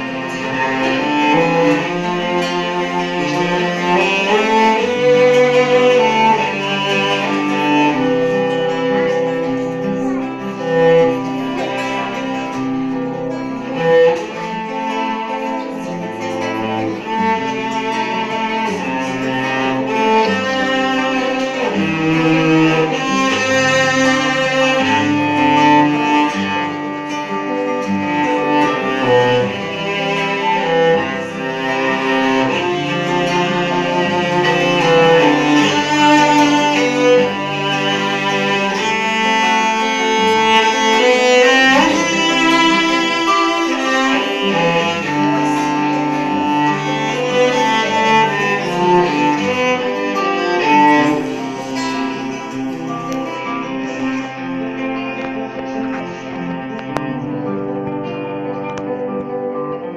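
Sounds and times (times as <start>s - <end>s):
bowed string instrumental music: 0.0s - 59.9s.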